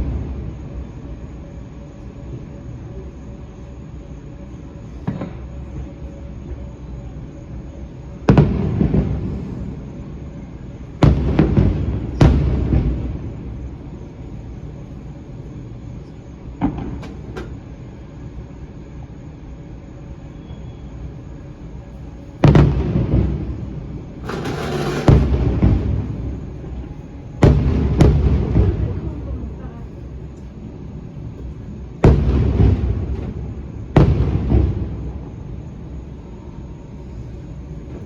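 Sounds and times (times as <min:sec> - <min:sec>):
fireworks booming: 0:04.9 - 0:05.8, 0:08.2 - 0:10.2, 0:10.8 - 0:14.8, 0:16.6 - 0:17.7, 0:22.4 - 0:29.7, 0:31.2 - 0:36.0.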